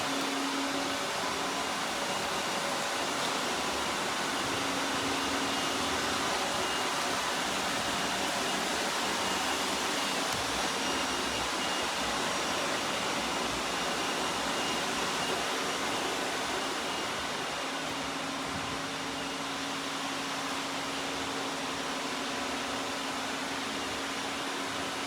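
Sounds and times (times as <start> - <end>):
robot vacuum running: 0.0 - 25.0.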